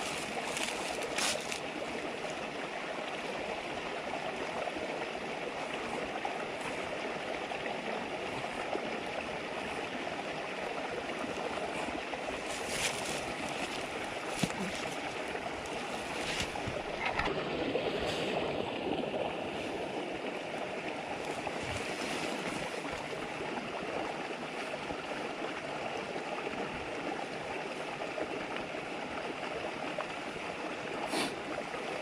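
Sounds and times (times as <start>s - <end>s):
campfire crackles: 0.0s - 2.4s, 11.1s - 17.3s, 18.6s - 25.6s
river babbling: 0.0s - 32.0s.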